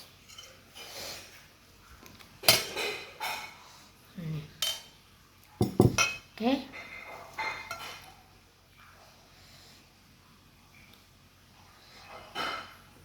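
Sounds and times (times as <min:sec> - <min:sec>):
cutlery clinking against a dish: 0:02.4 - 0:03.6, 0:04.6 - 0:04.9, 0:05.6 - 0:08.2, 0:12.0 - 0:12.9.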